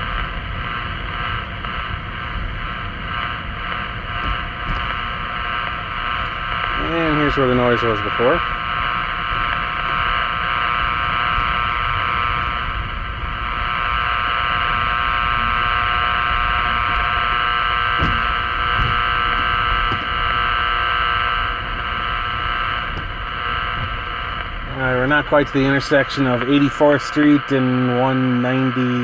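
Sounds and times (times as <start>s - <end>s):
car road rumble: 0.0s - 29.0s
radio interference buzz: 0.0s - 29.0s.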